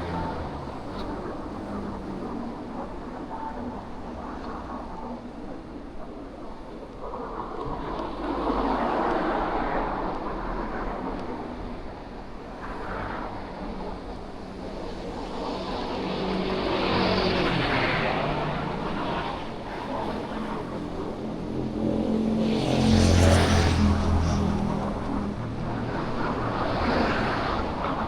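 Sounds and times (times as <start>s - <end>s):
cars passing: 12.9s - 28.0s.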